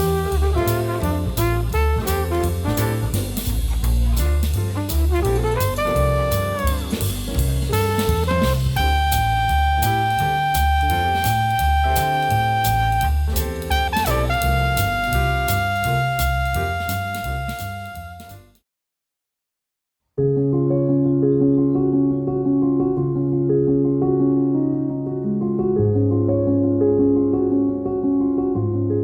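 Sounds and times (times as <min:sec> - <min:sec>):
walking bass: 0:00.0 - 0:18.4
drum kit: 0:00.0 - 0:18.6.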